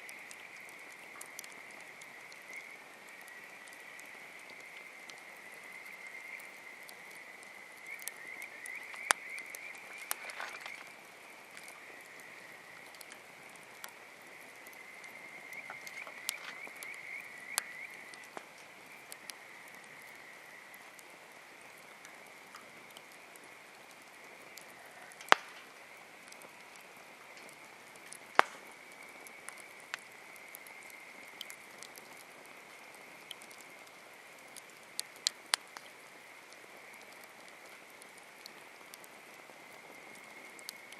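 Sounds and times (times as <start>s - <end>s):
frogs calling: 0.0s - 21.0s
campfire wood crackling: 0.0s - 40.9s
fire popping: 0.0s - 40.9s.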